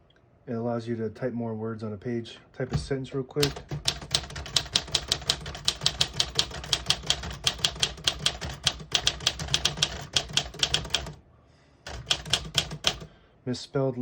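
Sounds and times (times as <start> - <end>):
typewriter typing quickly: 3.4 - 11.2, 11.9 - 13.1.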